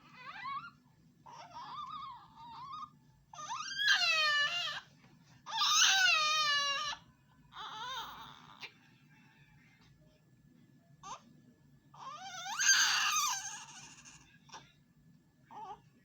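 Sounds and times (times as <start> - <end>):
baby crying: 1.3 - 4.8, 5.5 - 8.7, 12.0 - 14.6.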